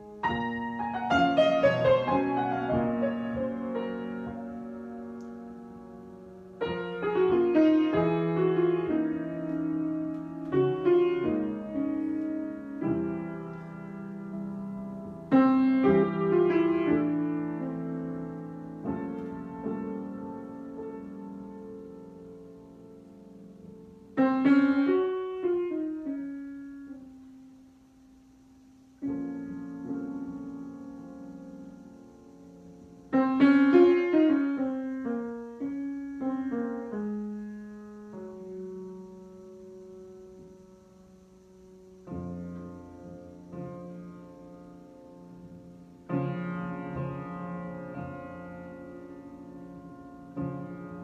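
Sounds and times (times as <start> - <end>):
solo piano improvisation: 0.0 - 51.0.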